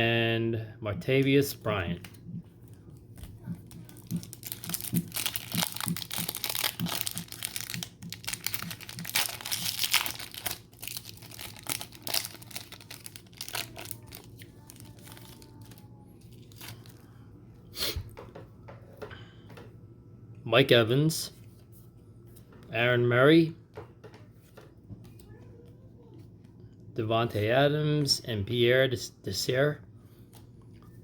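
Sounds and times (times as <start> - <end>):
plastic wrapper crinkling: 3.6 - 17.1
card pack tearing open: 3.9 - 15.8.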